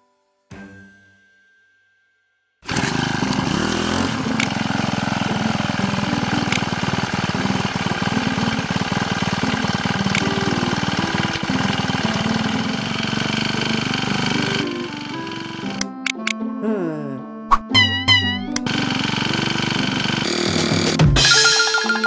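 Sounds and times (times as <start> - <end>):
small motor running: 2.6 - 15.8, 18.6 - 21.0.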